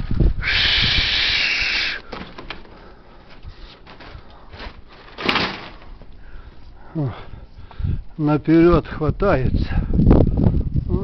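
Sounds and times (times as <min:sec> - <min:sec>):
gusty wind buffeting microphone: 0:00.0 - 0:01.8, 0:07.2 - 0:11.0
loud steady hiss: 0:00.4 - 0:02.3.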